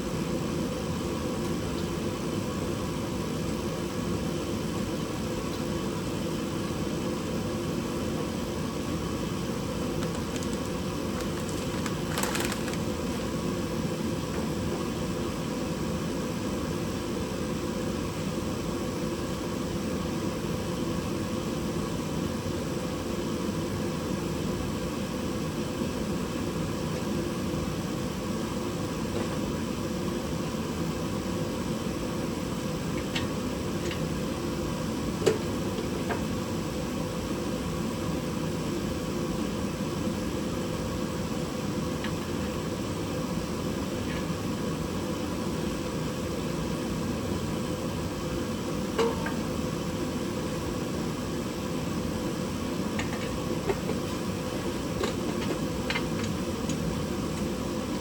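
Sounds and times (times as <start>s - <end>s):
machine whirring and humming: 0.0s - 23.4s.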